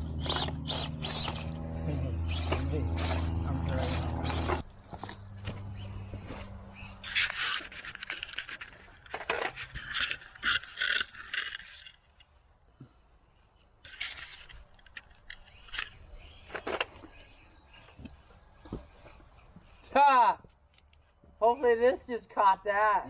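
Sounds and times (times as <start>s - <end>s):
rc car scraping over rocks: 0.0s - 1.6s, 2.2s - 5.2s, 6.7s - 12.4s, 13.9s - 18.2s.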